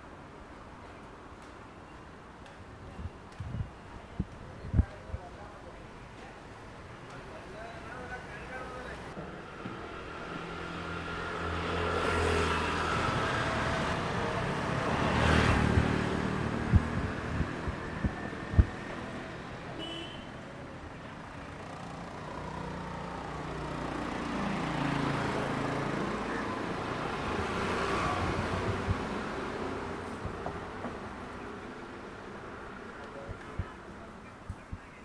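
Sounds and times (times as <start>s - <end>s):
vehicles driving past: 6.8s - 34.5s.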